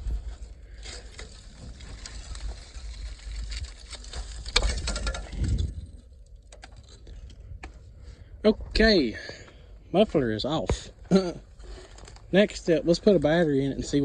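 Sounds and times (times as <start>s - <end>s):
metal scraping and clinking: 0.0s - 7.4s.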